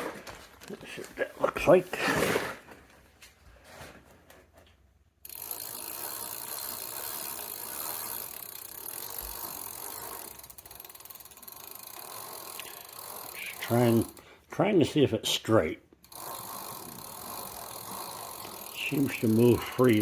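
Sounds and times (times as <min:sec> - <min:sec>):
bicycle freewheel ratcheting: 0:05.2 - 0:14.3, 0:16.0 - 0:20.0.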